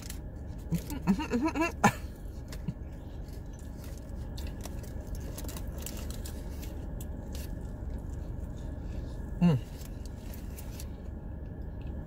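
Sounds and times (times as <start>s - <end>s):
car air conditioning humming: 0.0s - 12.0s.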